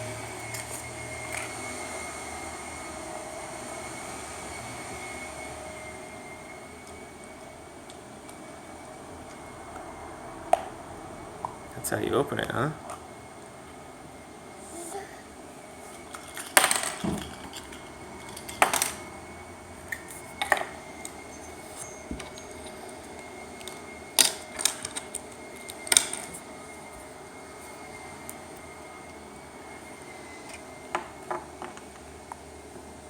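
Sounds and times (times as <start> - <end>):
small plastic pieces clicking: 23.6 - 26.3.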